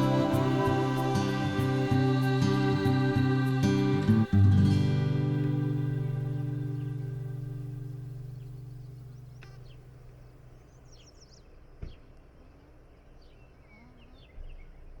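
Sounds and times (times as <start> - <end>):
acoustic guitar music: 0.0 - 10.1
faint outdoor ambience: 0.0 - 15.0.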